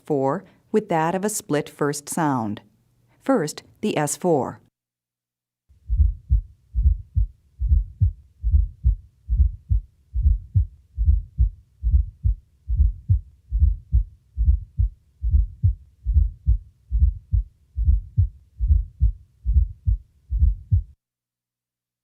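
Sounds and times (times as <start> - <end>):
heartbeat gallop rhythm: 5.8 - 21.0.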